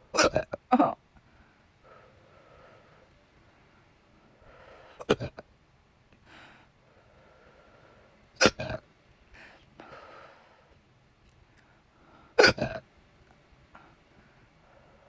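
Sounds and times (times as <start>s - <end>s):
person hiccuping: 0.1s - 1.0s, 5.0s - 5.4s, 8.4s - 8.8s, 12.4s - 12.8s.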